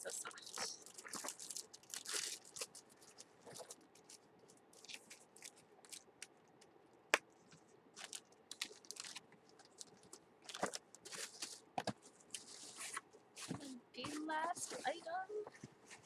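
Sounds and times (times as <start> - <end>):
packaging rustling: 0.1 - 6.3, 7.4 - 13.6.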